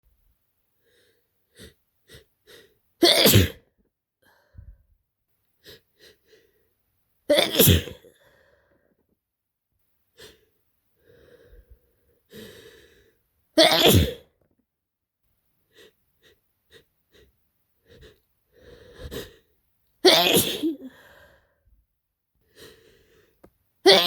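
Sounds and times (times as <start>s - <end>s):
person sneezing: 3.0s - 3.6s, 7.3s - 8.1s, 13.6s - 14.3s, 20.0s - 21.0s
faint breathing: 10.2s - 13.3s, 15.6s - 19.6s, 20.9s - 21.7s, 22.4s - 23.4s.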